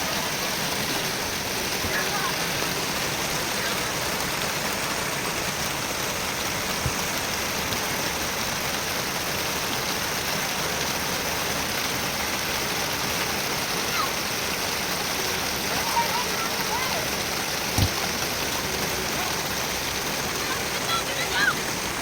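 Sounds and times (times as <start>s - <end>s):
heavy rain falling: 0.0s - 22.0s
soft thump: 17.7s - 18.0s.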